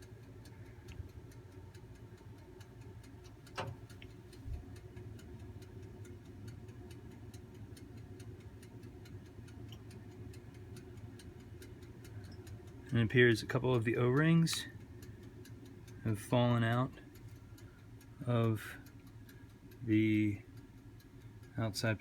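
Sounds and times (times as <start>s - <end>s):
steady ticking: 0.0s - 22.0s.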